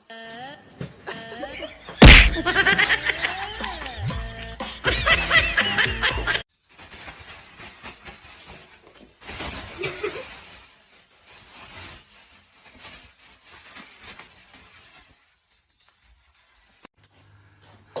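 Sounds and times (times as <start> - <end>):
music with bouncing melody: 2.4 - 6.4.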